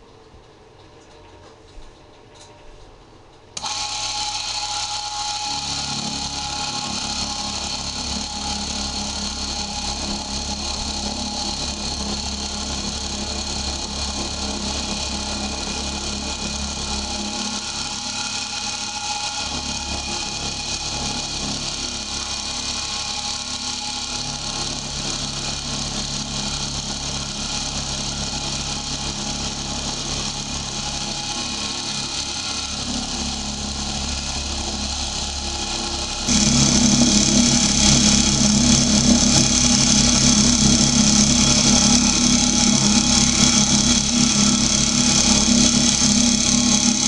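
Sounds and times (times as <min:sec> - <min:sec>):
drill press motor humming: 0:03.6 - 0:47.0.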